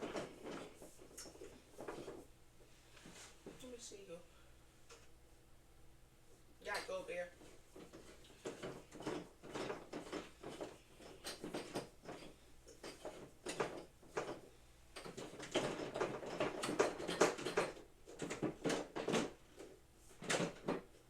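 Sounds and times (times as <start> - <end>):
equipment parts knocking and rattling: 0.0 - 2.3, 6.7 - 21.0.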